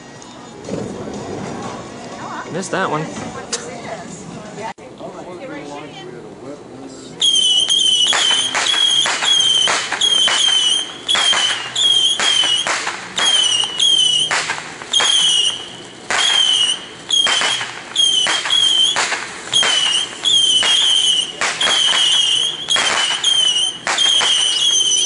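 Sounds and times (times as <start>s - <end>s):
fireworks crackling: 7.2s - 25.0s
fireworks whistling: 7.2s - 25.0s.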